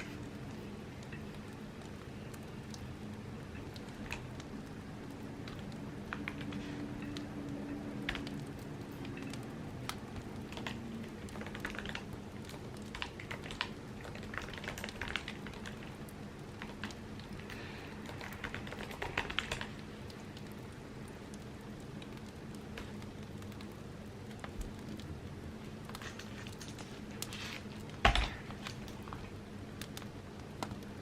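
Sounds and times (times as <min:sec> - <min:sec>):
keyboard typing: 0:05.5 - 0:19.8.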